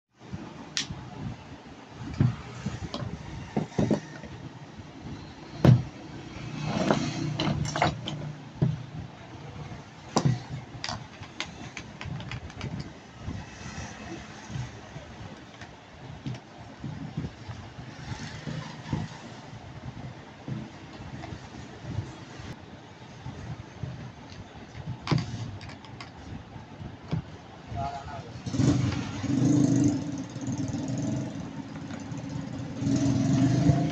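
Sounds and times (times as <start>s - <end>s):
knocks and clicks of handling tools: 2.1s - 4.4s, 5.5s - 9.0s, 10.0s - 13.0s, 24.3s - 26.2s.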